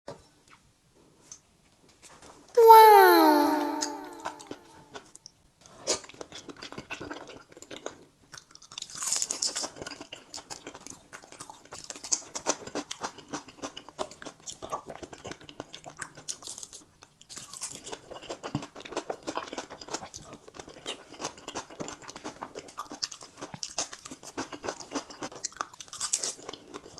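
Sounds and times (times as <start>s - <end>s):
close chewing of raw fish: 6.0s - 26.9s.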